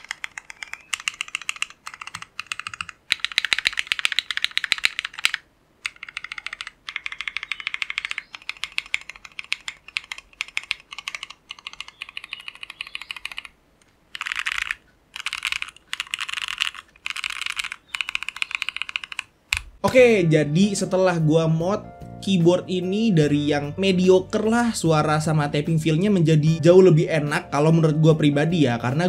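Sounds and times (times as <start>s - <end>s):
mechanical keyboard typing: 0.0s - 19.7s.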